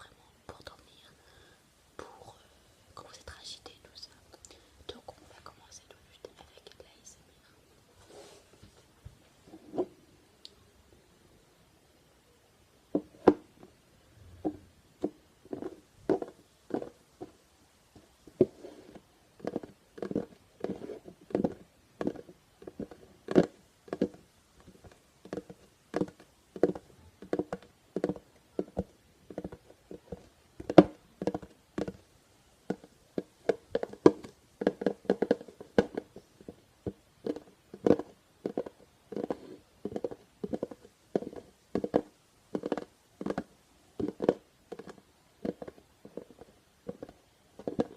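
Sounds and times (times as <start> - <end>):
tapping on plastic containers: 32.7 - 36.2.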